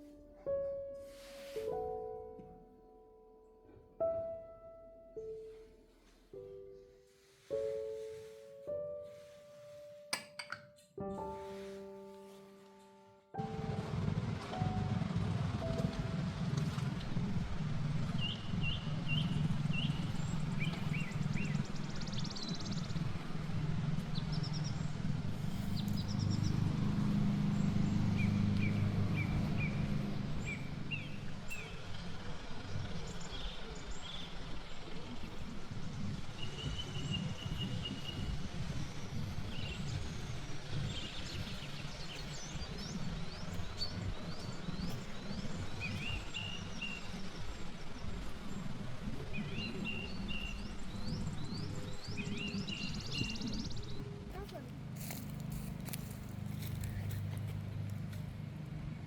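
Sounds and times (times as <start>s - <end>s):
songbirds chirping: 0.0s - 59.0s
low rumble: 13.4s - 54.3s.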